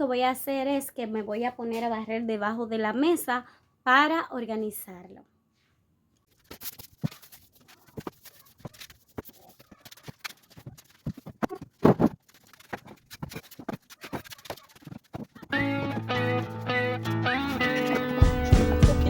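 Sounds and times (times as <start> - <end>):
guitar music: 15.5 - 19.0.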